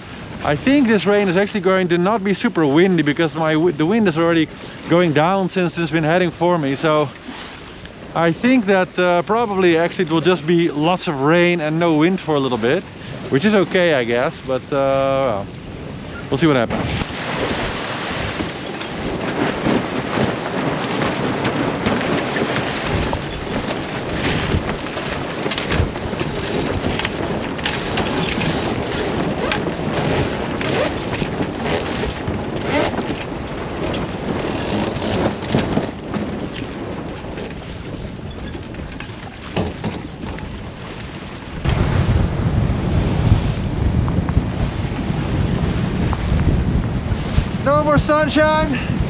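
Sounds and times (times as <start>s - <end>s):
water splashing along hull: 0.0s - 49.0s
wind rushing over microphone: 0.0s - 49.0s
low rumble: 41.5s - 49.0s.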